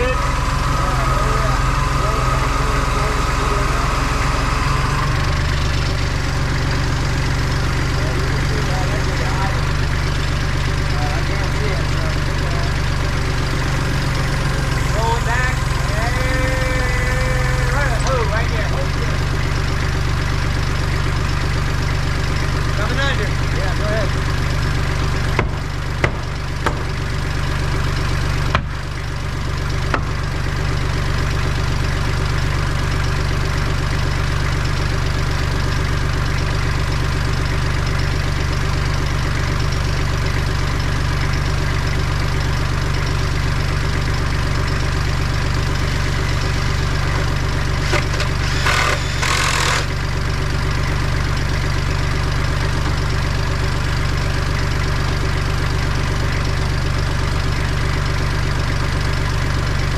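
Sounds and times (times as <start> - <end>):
diesel tractor engine idling: 0.0 - 59.9
sharp knocks: 25.4 - 26.9.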